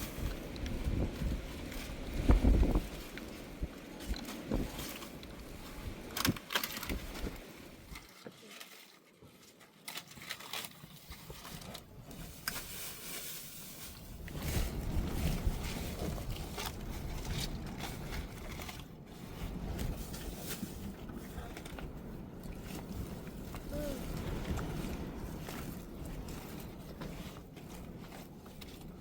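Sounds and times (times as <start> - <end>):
wind buffeting microphone: 0.0 - 7.9, 14.0 - 29.0
faint clicks and scrapes: 0.0 - 29.0.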